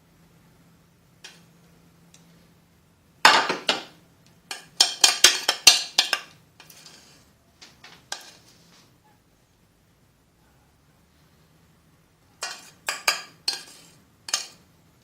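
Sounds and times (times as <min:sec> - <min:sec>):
spoon clinking against pot: 0:04.5 - 0:06.8, 0:12.4 - 0:14.6.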